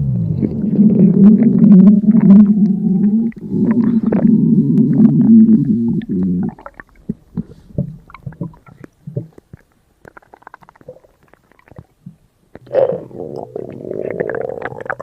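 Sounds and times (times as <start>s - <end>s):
synthesized stomach growl: 0.0s - 6.8s, 10.1s - 15.0s
small gurgles and clicks: 0.3s - 15.0s.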